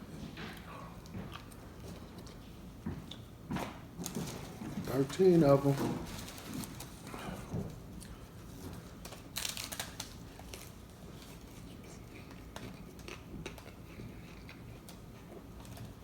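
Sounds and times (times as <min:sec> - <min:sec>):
paper wrappers rustling: 0:04.0 - 0:07.2, 0:08.7 - 0:11.6.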